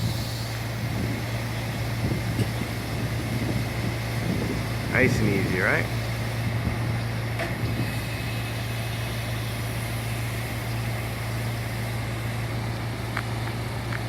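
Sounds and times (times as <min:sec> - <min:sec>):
heavy diesel engine drone: 0:00.0 - 0:14.0.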